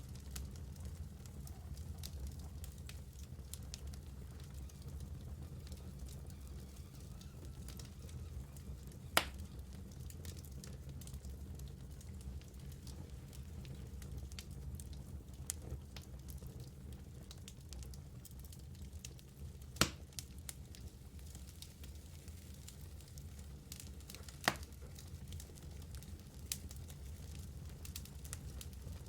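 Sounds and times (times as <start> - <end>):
wood fire crackling: 0.0 - 29.0
sharp fire pops: 9.1 - 9.4, 19.8 - 20.2, 24.0 - 25.0.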